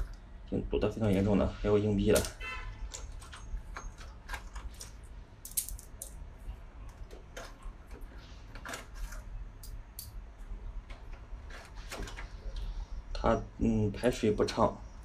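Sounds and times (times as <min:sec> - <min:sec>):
clicks and clinks of small debris: 0:02.1 - 0:06.2.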